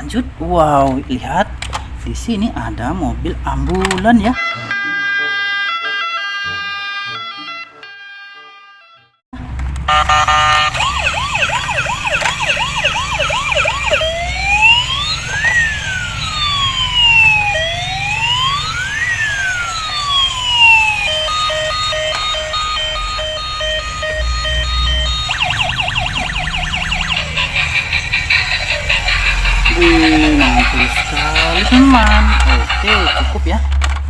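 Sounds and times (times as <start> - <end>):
toy siren yelping: 9.9 - 33.3
low rumble: 24.2 - 33.3.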